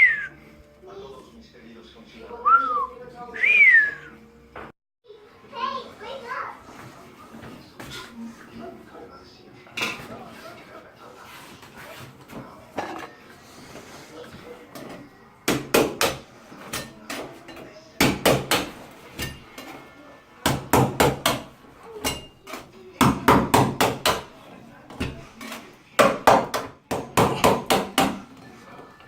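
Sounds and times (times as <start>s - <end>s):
hammer striking a sink: 15.5s - 16.9s, 18.0s - 19.4s, 20.4s - 22.3s, 23.0s - 24.3s, 26.0s - 28.3s.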